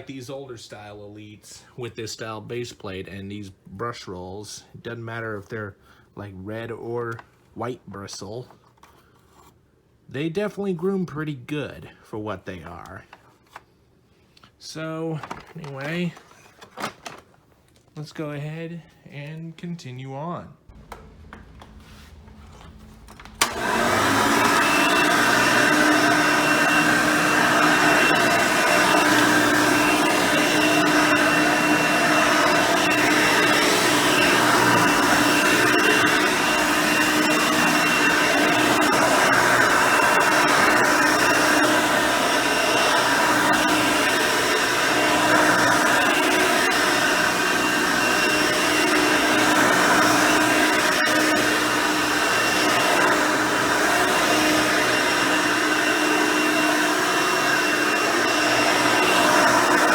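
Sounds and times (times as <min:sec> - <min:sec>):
upright vacuum cleaner running: 0:20.7 - 0:59.9.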